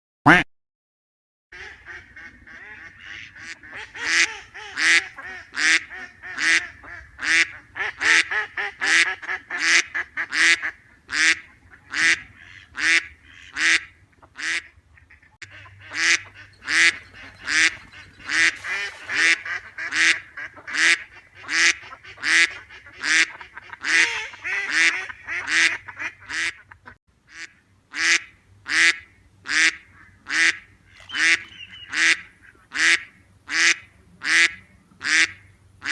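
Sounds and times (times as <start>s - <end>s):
ducks quacking: 1.6s - 35.9s.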